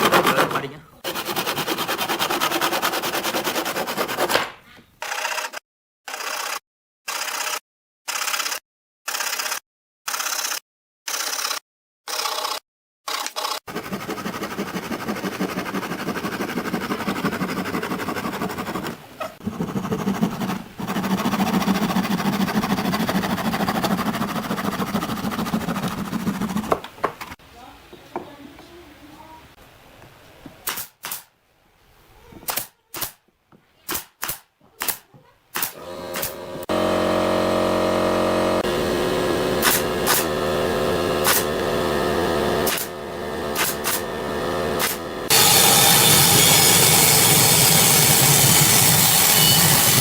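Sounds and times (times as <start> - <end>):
electric woodworking power tool: 0.5 - 4.2, 13.7 - 19.0, 19.8 - 26.8, 35.7 - 50.0
nail gun firing: 30.7 - 31.3, 33.9 - 35.0, 35.6 - 36.5, 39.6 - 40.4, 41.2 - 41.6, 42.6 - 43.0, 43.6 - 44.1, 44.8 - 45.0.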